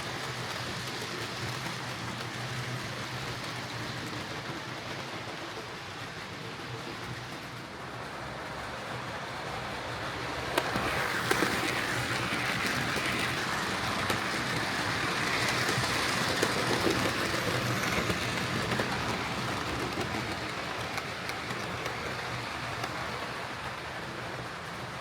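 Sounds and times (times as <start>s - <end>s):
model train running on track: 0.0s - 25.0s.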